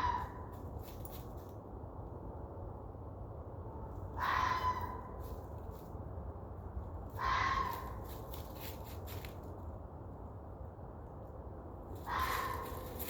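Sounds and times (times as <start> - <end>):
harsh animal calls: 0.0 - 0.4, 4.2 - 5.1, 7.1 - 8.0.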